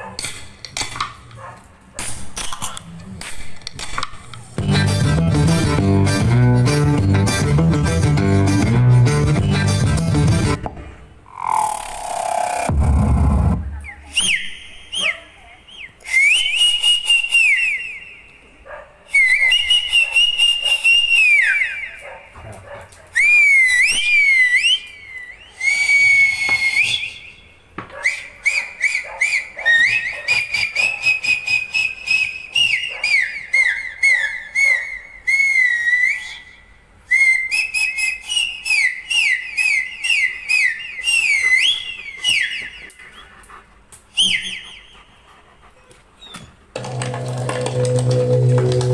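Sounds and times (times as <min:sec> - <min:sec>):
high whistling chirps and trills: 0:11.2 - 0:18.4, 0:23.2 - 0:43.3, 0:44.1 - 0:45.1.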